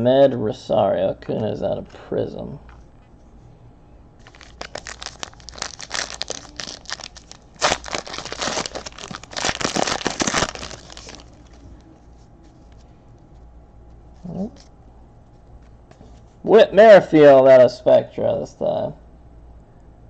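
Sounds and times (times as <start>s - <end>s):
card pack wrapper crinkling: 4.2s - 11.9s.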